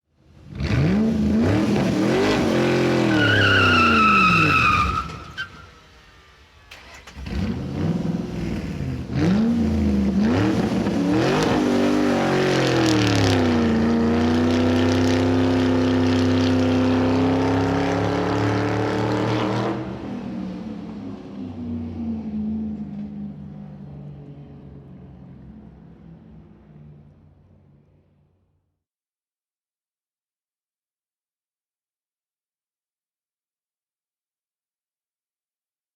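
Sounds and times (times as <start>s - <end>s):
car engine revving through gears: 0.4s - 5.2s, 6.7s - 20.3s
tyre squeal: 3.0s - 5.9s.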